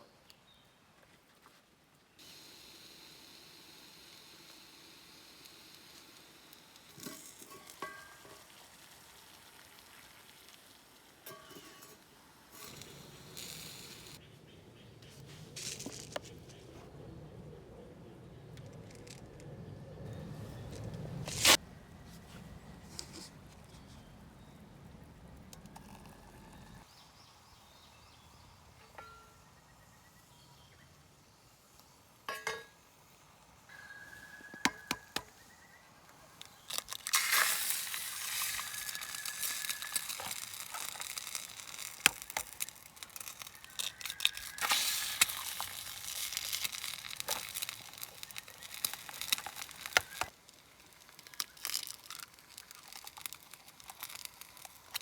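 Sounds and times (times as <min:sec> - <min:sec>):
plastic crinkling and rustling: 0:15.2 - 0:16.8, 0:36.4 - 0:55.0.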